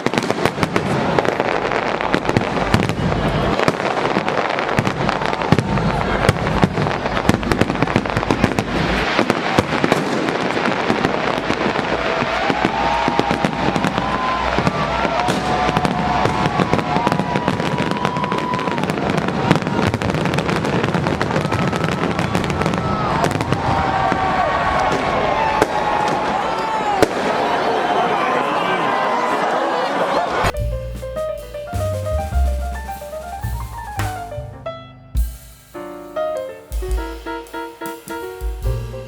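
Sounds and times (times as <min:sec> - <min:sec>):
fireworks crackling and banging: 0:00.0 - 0:27.6.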